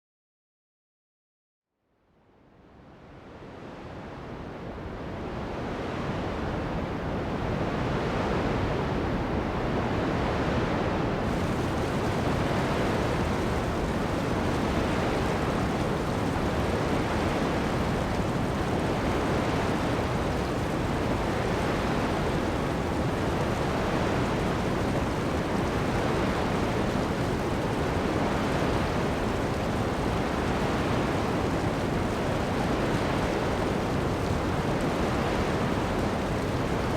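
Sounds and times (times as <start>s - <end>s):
heavy rain: 3.0s - 36.9s
surf breaking on sand: 10.2s - 36.9s.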